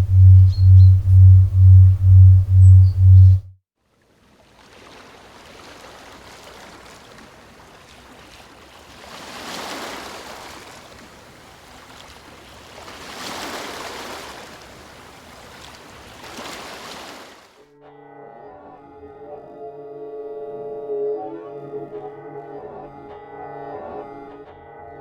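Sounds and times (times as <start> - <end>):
waves washing in: 4.2 - 17.6.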